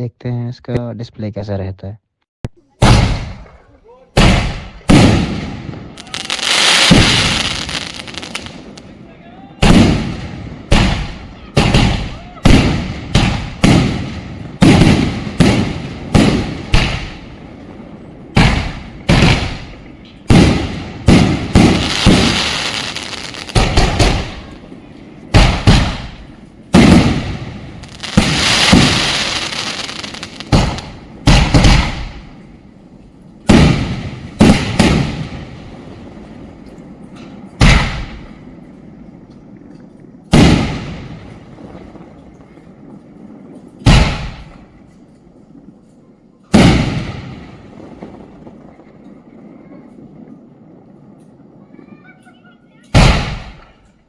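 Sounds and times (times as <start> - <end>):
firework bangs: 2.6 - 54.0
firework hiss: 6.0 - 8.8, 20.4 - 24.6, 26.8 - 32.4.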